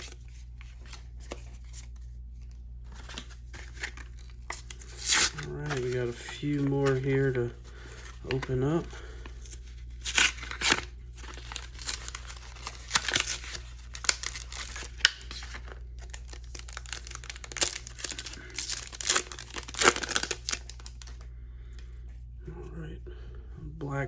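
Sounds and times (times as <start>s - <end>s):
blister pack packaging tearing: 3.0s - 21.2s.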